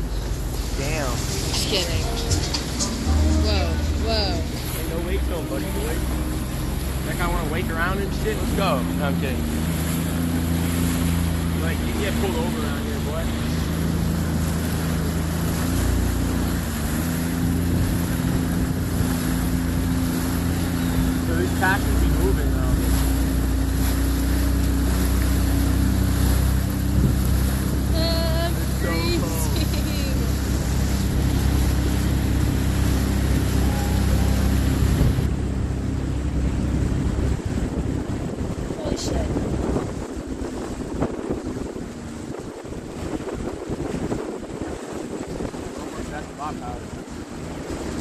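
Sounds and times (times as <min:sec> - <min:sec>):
jet ski engine running: 0:00.0 - 0:48.0
wind and water noise: 0:00.0 - 0:48.0.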